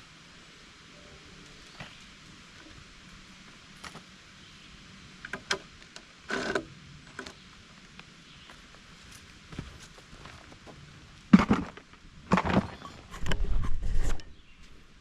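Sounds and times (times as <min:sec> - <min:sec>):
scraping rustle: 0:11.4 - 0:14.7.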